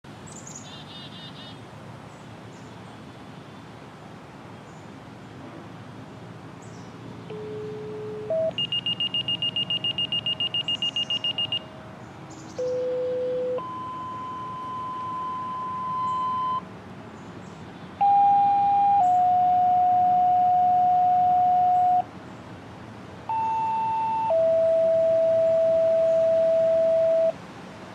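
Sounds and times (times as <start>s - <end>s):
pulsing high beep: 7.3s - 11.6s, 12.6s - 16.6s, 18.0s - 22.0s, 23.3s - 27.3s
radio activation tones: 7.3s - 11.6s, 12.6s - 16.6s, 18.0s - 22.0s, 23.3s - 27.3s
electronic siren steady tone: 7.3s - 11.7s, 12.6s - 16.6s, 18.0s - 22.1s, 23.3s - 27.4s.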